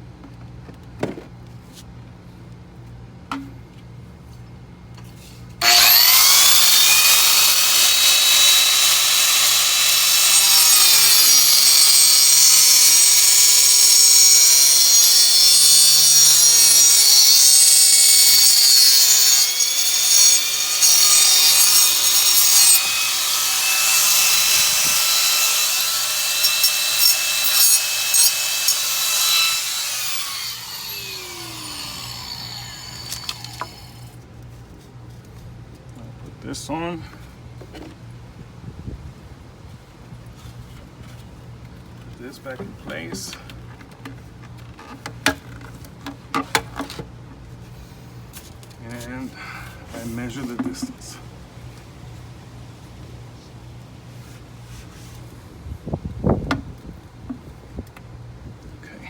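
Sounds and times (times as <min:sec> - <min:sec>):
power saw cutting plastic pipe: 0:05.6 - 0:34.1.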